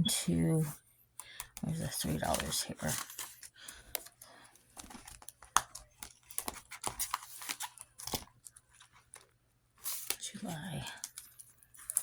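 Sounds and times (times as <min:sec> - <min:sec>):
paper rustling and crinkling: 0:01.7 - 0:12.0.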